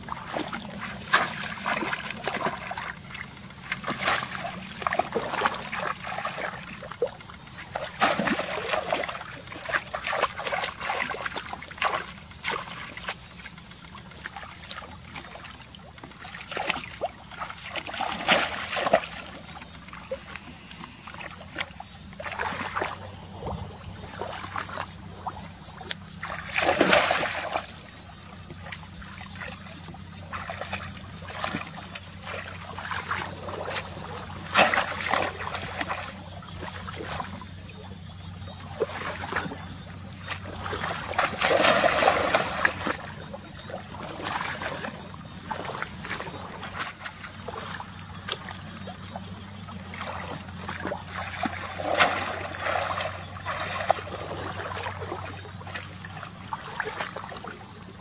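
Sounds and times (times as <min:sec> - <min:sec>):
water splashing and trickling: 0:00.0 - 0:58.0
loud splash: 0:07.8 - 0:12.9, 0:17.6 - 0:19.4, 0:26.2 - 0:27.9, 0:30.3 - 0:36.1, 0:40.4 - 0:43.1, 0:49.9 - 0:55.8.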